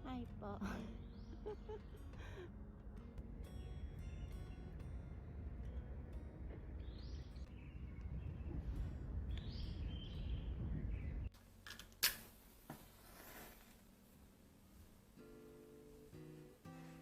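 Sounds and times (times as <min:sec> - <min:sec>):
low outdoor rumble: 0:00.0 - 0:11.6
small birds chirping: 0:00.1 - 0:02.5, 0:03.5 - 0:11.4.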